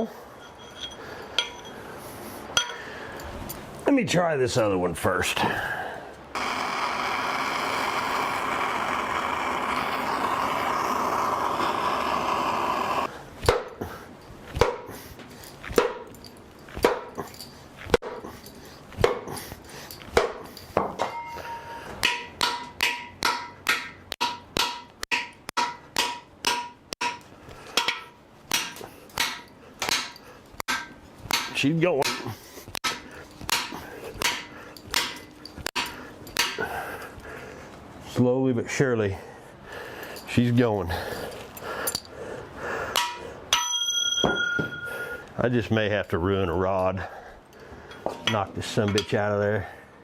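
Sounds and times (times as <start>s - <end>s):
steady hiss: 6.4s - 13.1s.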